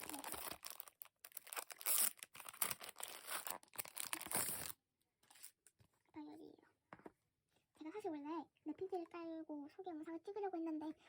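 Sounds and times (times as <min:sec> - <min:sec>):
packaging crinkling and tearing: 0:00.0 - 0:04.8.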